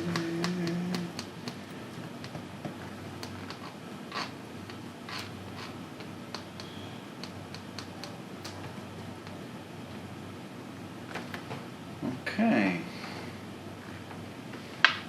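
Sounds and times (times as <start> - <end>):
mahjong tiles clicking: 0.0 - 1.6.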